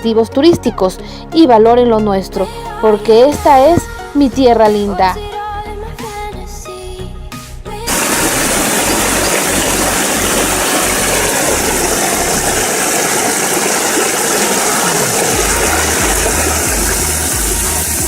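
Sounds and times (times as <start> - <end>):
waterfall rushing: 7.9 - 18.0.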